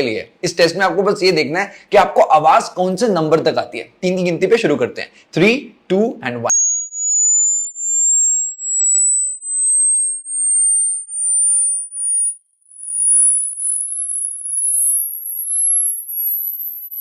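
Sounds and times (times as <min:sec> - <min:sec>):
high-pitched sine tone gliding upward: 0:06.5 - 0:17.0.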